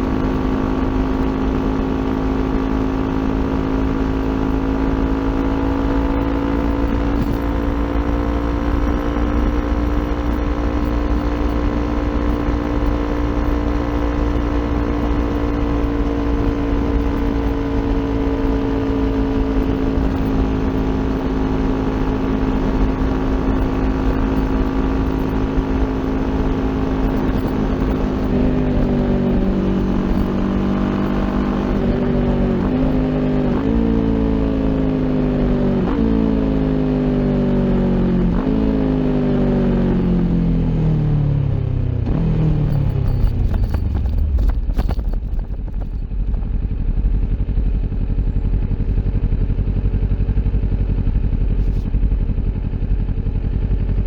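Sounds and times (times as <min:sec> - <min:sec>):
motorcycle engine revving: 0:00.0 - 0:54.0
wind noise: 0:42.0 - 0:47.4.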